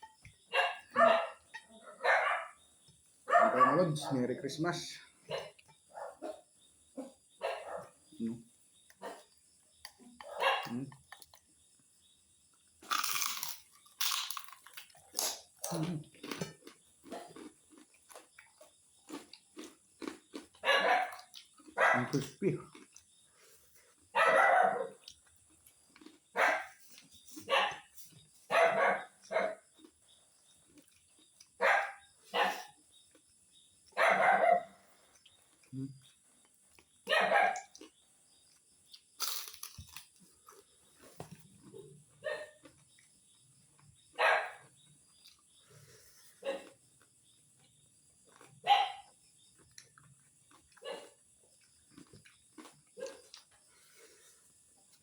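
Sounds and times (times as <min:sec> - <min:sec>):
dog barking: 0:00.5 - 0:02.6, 0:03.2 - 0:04.2, 0:05.3 - 0:08.0, 0:09.0 - 0:09.4, 0:10.2 - 0:10.9, 0:20.3 - 0:22.8, 0:24.1 - 0:25.1, 0:26.0 - 0:26.8, 0:27.4 - 0:27.9, 0:28.5 - 0:29.9, 0:31.6 - 0:32.8, 0:33.9 - 0:34.9, 0:37.0 - 0:37.8, 0:42.2 - 0:42.8, 0:44.1 - 0:44.7, 0:46.4 - 0:46.8, 0:48.3 - 0:49.2, 0:50.7 - 0:51.2, 0:52.6 - 0:53.4
chewing crunches and smacks: 0:08.7 - 0:24.2, 0:24.9 - 0:28.3, 0:29.2 - 0:34.0, 0:34.8 - 0:55.0.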